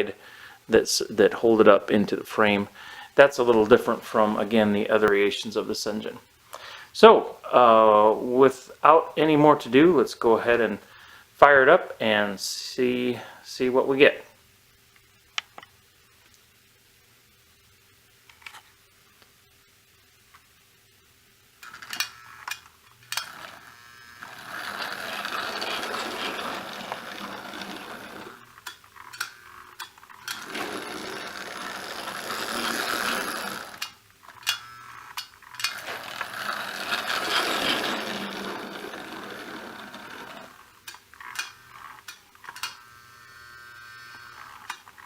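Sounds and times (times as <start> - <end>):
model train whirring and clattering: 21.6 - 43.6, 44.3 - 45.0.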